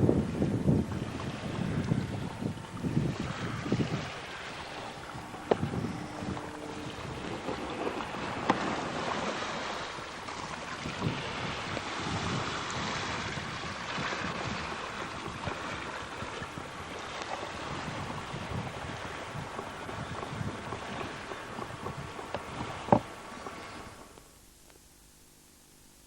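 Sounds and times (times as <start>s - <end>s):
wind buffeting microphone: 0.0s - 24.1s
rushing water and waves: 0.0s - 24.2s.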